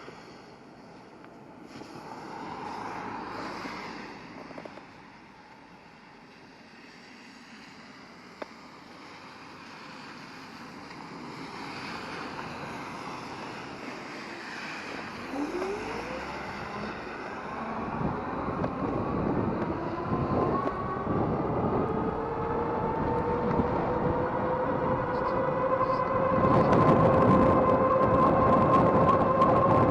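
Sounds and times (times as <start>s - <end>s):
wind and riding noise: 0.0s - 29.9s
electric motor whine: 15.0s - 29.8s.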